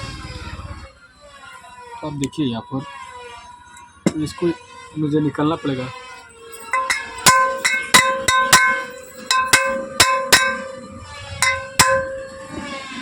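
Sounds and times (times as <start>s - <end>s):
hammer striking metal rod: 4.1s - 4.3s, 6.5s - 10.8s, 11.4s - 12.6s.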